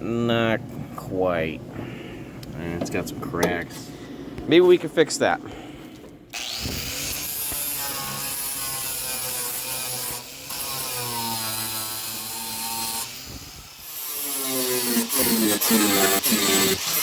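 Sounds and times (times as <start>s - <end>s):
angle grinder grinding metal: 6.3s - 17.0s.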